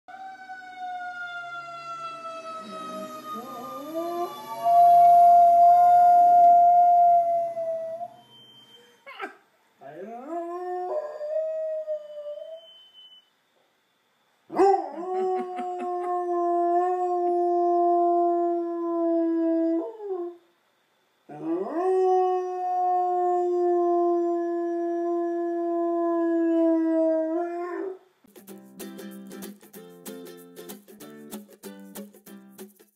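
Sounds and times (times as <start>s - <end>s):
dog howling like a siren: 0.1s - 12.8s, 14.5s - 20.4s, 21.3s - 28.0s.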